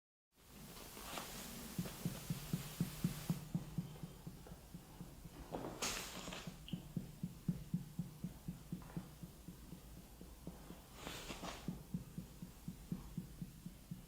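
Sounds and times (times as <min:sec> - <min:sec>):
soft rustles: 0:00.5 - 0:06.8, 0:10.4 - 0:13.2
fingers tapping on abdomen: 0:01.1 - 0:14.0.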